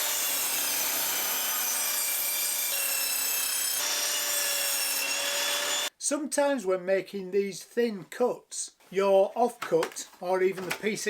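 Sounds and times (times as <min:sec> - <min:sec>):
table saw ripping wood: 0:00.0 - 0:05.9.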